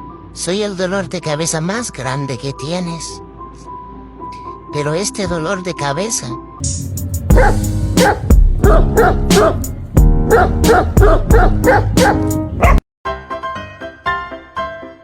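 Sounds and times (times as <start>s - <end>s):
loud music with steady beat: 6.8s - 12.6s
soft piano music: 7.3s - 15.0s
puppy yipping: 10.3s - 12.8s.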